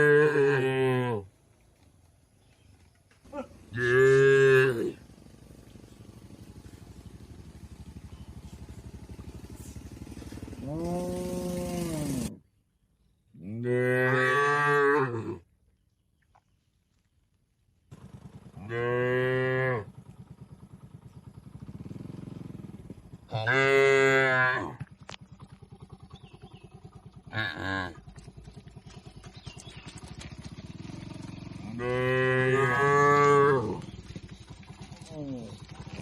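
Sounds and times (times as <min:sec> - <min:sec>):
cattle mooing: 0:00.0 - 0:01.3, 0:03.7 - 0:05.0, 0:10.6 - 0:12.3, 0:13.5 - 0:15.4, 0:18.6 - 0:19.9, 0:23.3 - 0:24.9, 0:31.6 - 0:33.9
steady low hum: 0:01.3 - 0:13.3.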